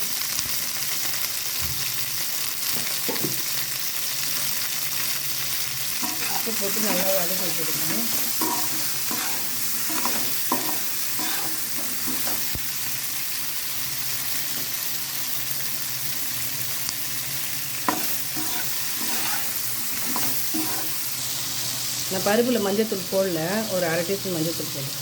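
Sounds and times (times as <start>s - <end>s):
vegetables sizzling in hot oil: 0.0s - 25.0s
spatula scraping a pan: 6.0s - 12.6s, 17.8s - 21.2s.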